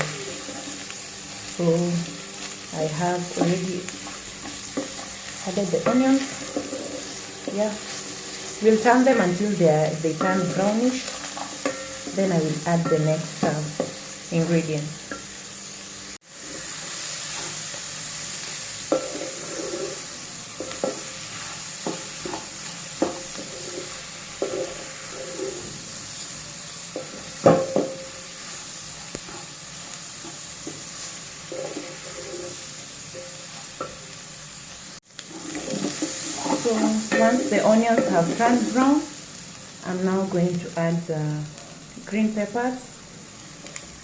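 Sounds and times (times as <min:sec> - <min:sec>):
onions sizzling in a pot: 0:00.0 - 0:44.0
spoon knocking against pot: 0:27.0 - 0:28.1.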